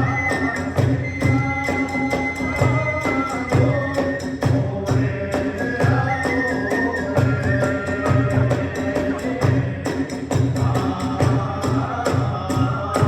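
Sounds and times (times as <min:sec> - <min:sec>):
transverse flute high notes: 0:00.0 - 0:04.6, 0:05.4 - 0:08.9.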